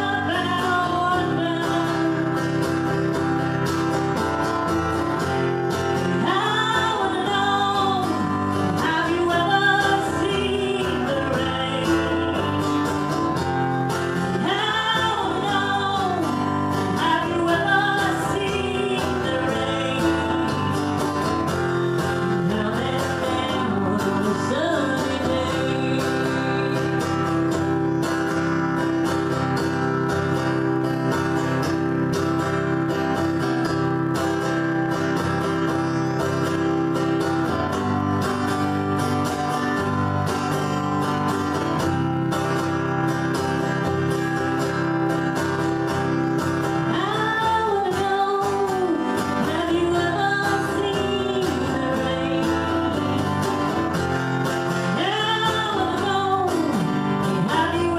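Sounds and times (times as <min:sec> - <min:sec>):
person singing: 0:00.0 - 0:03.3, 0:05.9 - 0:32.4, 0:45.8 - 0:57.9
country song with guitar: 0:00.0 - 0:57.9.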